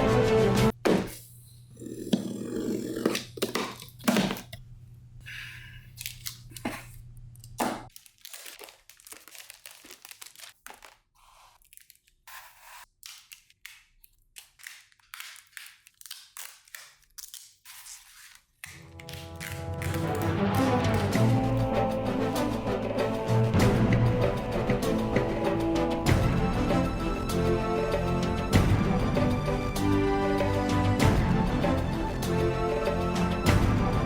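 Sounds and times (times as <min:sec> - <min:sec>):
plastic and paper crinkling: 0:05.9 - 0:21.6.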